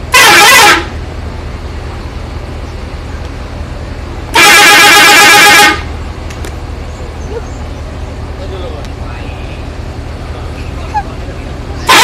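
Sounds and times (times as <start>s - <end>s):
bus musical air horn warbling: 0.0s - 1.1s, 4.3s - 6.0s.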